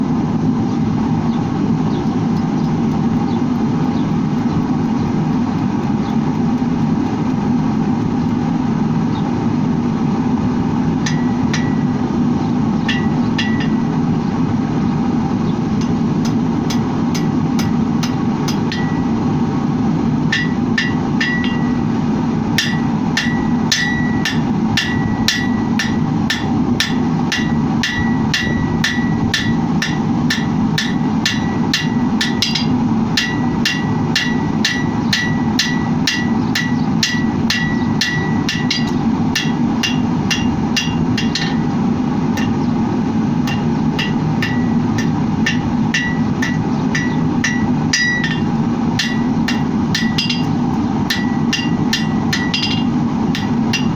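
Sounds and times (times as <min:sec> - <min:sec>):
hammer striking steel on anvil: 0:11.0 - 0:12.1, 0:12.8 - 0:14.0, 0:15.8 - 0:19.3, 0:20.3 - 0:22.0, 0:22.6 - 0:42.8, 0:43.4 - 0:53.9.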